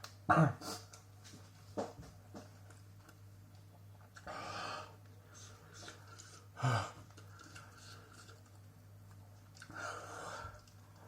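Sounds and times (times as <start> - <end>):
steady low hum: 0.0 - 11.0
man breathing hard: 9.7 - 10.6.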